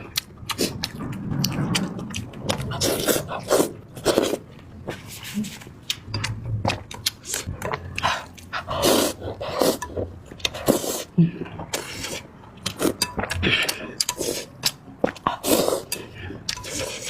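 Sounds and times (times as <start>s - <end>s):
mouth clicks and chewing: 0.0s - 4.6s, 5.4s - 17.0s
slurping noodles: 2.6s - 5.6s, 7.2s - 17.0s.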